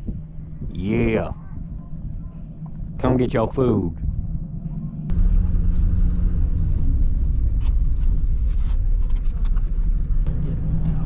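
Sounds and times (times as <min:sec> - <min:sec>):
farm vehicle engine rumbling: 0:04.2 - 0:11.0.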